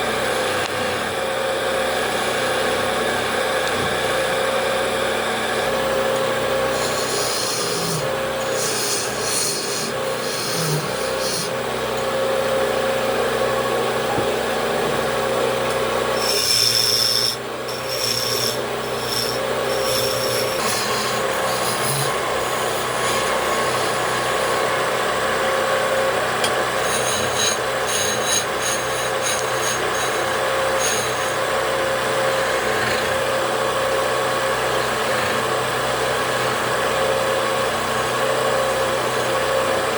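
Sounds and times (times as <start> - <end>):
wood lathe running: 6.3 - 12.0, 14.6 - 33.5
turning tool scraping wood: 6.7 - 11.6, 16.2 - 24.0, 26.6 - 31.4.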